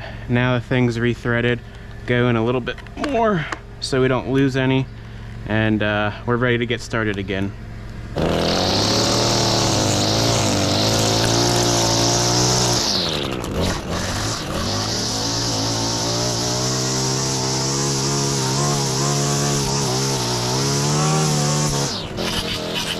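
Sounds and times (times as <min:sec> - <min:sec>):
string trimmer running: 0:08.1 - 0:22.9.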